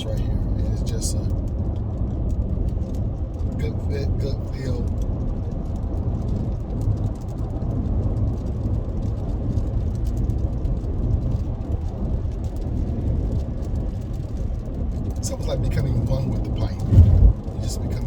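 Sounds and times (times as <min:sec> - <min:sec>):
car cabin rumble: 0:00.0 - 0:01.4, 0:15.2 - 0:18.0.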